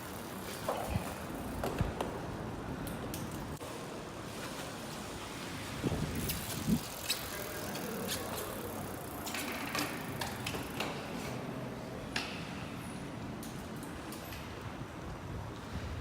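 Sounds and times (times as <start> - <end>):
bike clicks and knocks: 0.0 - 3.7, 6.1 - 14.8.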